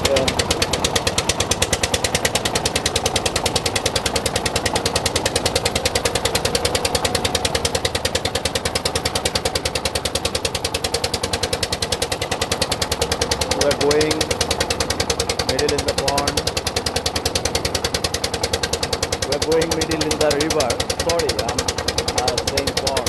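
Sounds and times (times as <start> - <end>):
boat engine chugging: 0.0 - 23.0.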